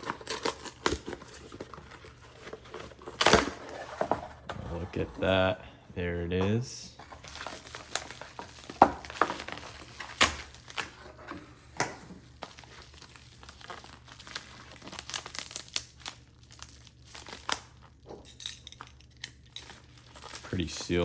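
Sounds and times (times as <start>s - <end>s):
packing material crinkling: 0.0s - 4.1s, 7.0s - 11.2s, 12.2s - 18.2s, 18.8s - 21.0s.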